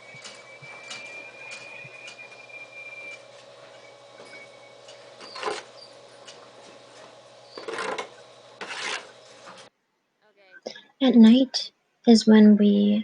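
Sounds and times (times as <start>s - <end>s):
steady mechanical hum: 0.0s - 13.0s
short scraping knocks: 4.2s - 9.7s.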